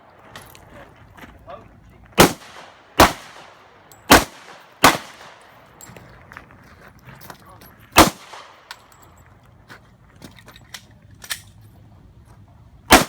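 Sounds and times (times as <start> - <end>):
pistol shots with echo: 2.2 - 5.6, 8.0 - 8.7.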